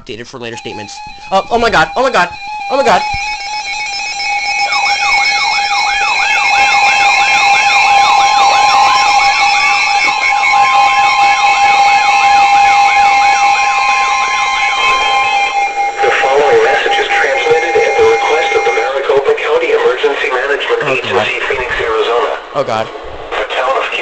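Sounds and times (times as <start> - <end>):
steady alert tones: 0.0 - 20.0
sweeping siren-like tone: 0.5 - 22.5.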